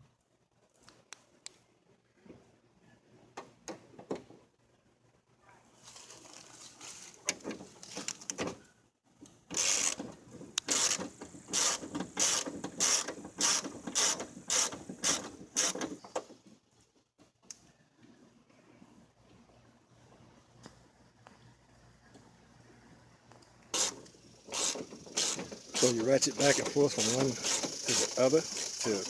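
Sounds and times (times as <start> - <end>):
ratchet wrench clicking: 10.6 - 15.8, 23.8 - 29.0.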